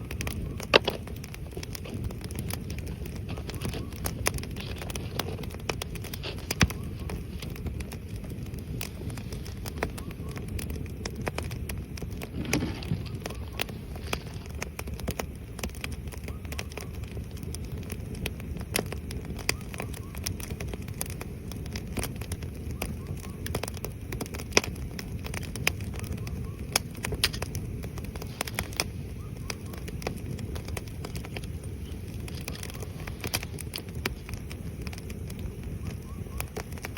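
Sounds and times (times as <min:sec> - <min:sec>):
firewood crackling and popping: 0:00.0 - 0:36.9
low rush of flame: 0:00.0 - 0:36.9.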